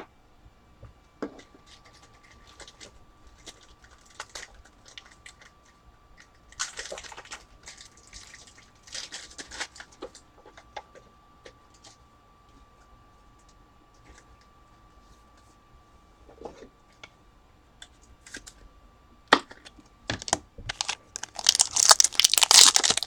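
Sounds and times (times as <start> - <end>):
trading cards and plastic sleeves rustling: 20.2 - 23.0.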